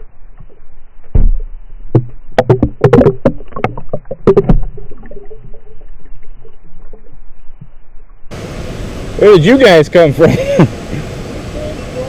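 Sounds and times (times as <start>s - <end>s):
kayak paddles knocking: 0.4s - 6.0s
thump: 1.1s - 3.2s.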